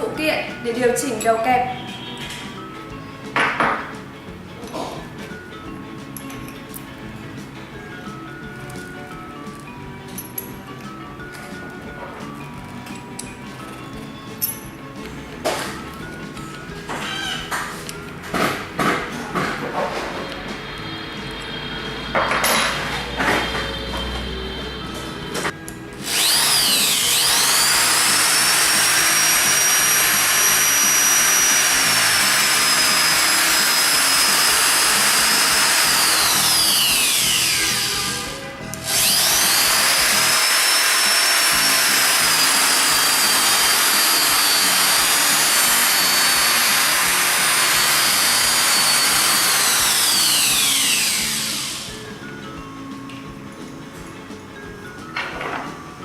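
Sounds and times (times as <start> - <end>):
drill motor whining: 16.8 - 17.6, 20.9 - 52.2.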